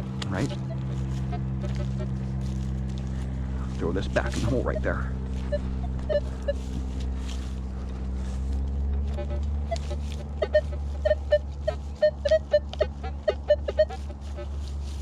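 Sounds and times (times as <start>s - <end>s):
steady low hum: 0.0s - 15.0s
metal detector beeping: 4.2s - 6.8s, 9.7s - 14.0s.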